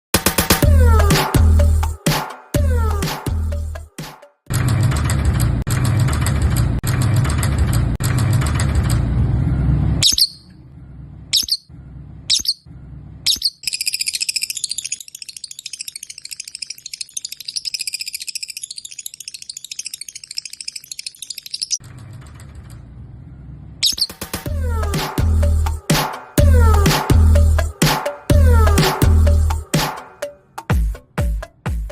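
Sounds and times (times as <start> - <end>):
loud music: 0.2 - 4.2, 24.4 - 31.9
shrill bird chattering: 10.0 - 10.6, 11.3 - 11.7, 12.3 - 12.7, 13.3 - 21.8, 23.8 - 24.4.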